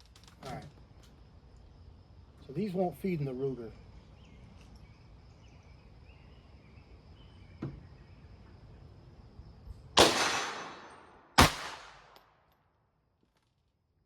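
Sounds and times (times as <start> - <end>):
pistol shots: 10.0 - 12.3.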